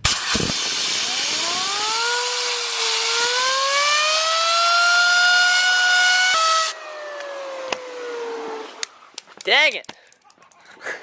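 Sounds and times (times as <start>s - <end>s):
compressed air hiss: 0.0s - 3.3s
fidget spinner whine: 0.2s - 8.9s.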